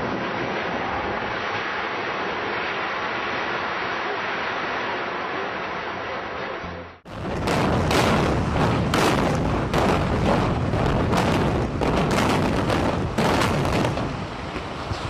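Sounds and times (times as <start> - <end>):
continuous low rumble: 0.0 - 15.0
sharp explosive bangs: 7.1 - 14.5.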